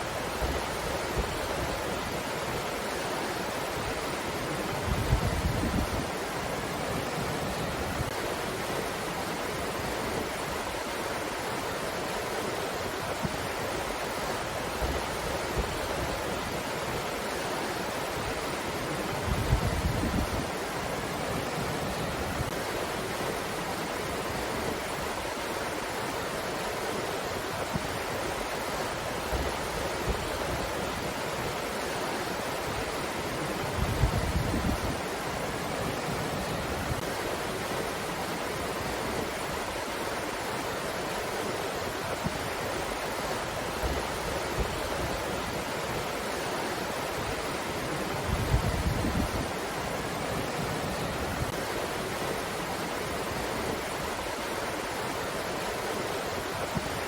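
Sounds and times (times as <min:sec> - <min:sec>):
steady rushing wind: 0:00.0 - 0:57.0
wind gusts buffeting microphone: 0:03.7 - 0:08.7, 0:18.1 - 0:22.6, 0:32.5 - 0:40.0, 0:41.8 - 0:55.3.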